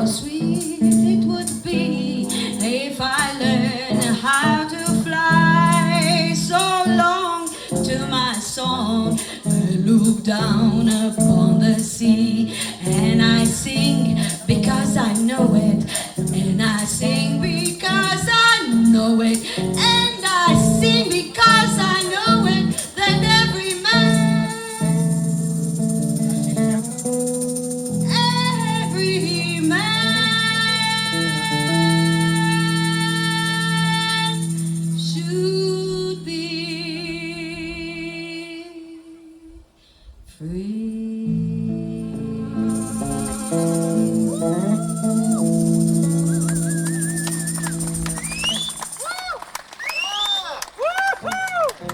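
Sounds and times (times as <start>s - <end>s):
person singing: 0.0s - 25.2s, 28.0s - 39.6s, 40.4s - 48.4s
rhythmic bass notes: 0.0s - 36.6s, 41.4s - 48.9s
jazz melodic lead line: 41.7s - 48.6s.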